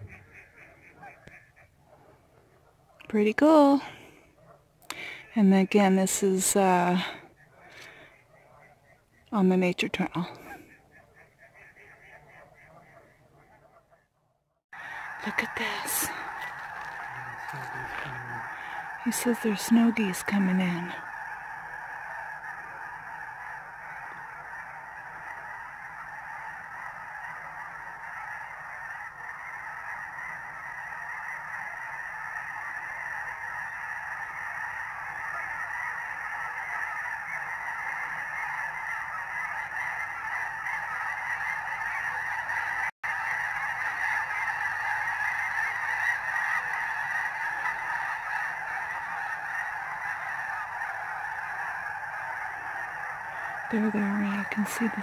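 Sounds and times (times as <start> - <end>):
geese honking: 0.0 - 14.0, 14.8 - 55.0.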